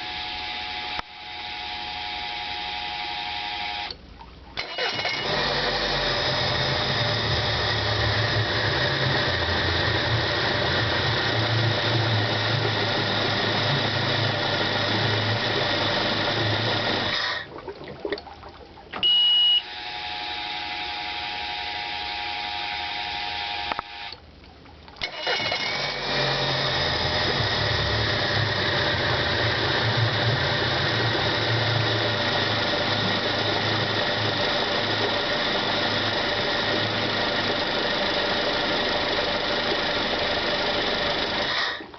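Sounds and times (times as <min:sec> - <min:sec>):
outboard motor running: 0:00.0 - 0:03.9, 0:04.5 - 0:17.6, 0:18.9 - 0:24.2, 0:25.0 - 0:41.9
short high beep: 0:19.0 - 0:19.7.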